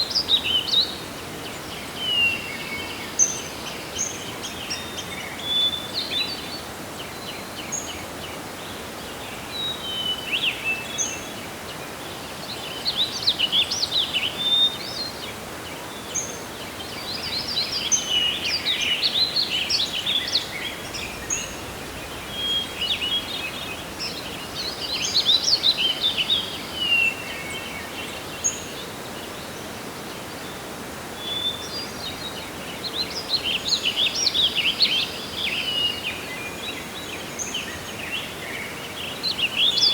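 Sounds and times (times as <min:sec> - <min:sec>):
songbirds singing and chirping: 0:00.0 - 0:39.9
wind hiss: 0:17.5 - 0:28.6.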